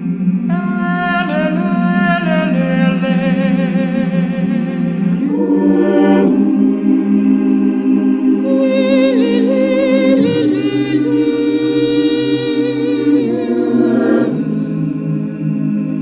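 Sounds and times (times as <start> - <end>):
high voice singing with vibrato: 0.5 - 6.0, 8.4 - 13.6
choir singing a cappella: 0.5 - 14.5.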